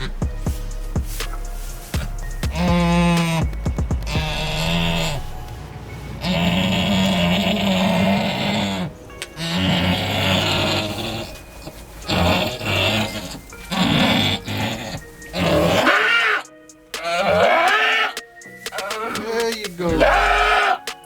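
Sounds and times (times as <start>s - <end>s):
goat bleating: 19.9s - 20.9s.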